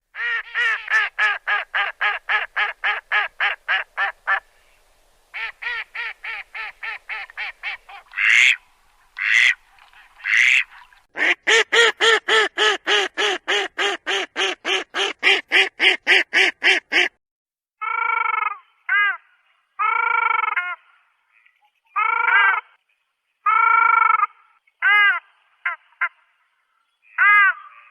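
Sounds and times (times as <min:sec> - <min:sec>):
duck quacking: 0:00.2 - 0:04.4, 0:05.4 - 0:08.6, 0:09.2 - 0:09.6, 0:10.2 - 0:17.1.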